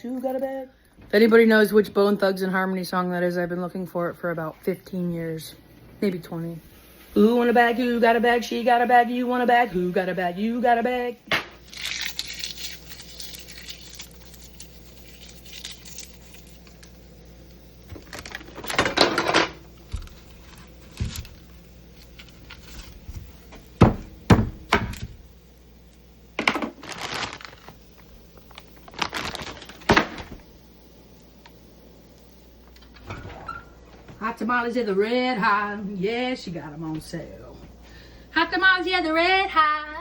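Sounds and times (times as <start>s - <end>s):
rustling and crinkling: 11.6s - 23.9s, 25.9s - 30.6s
sharp knocks and thuds: 23.8s - 25.2s.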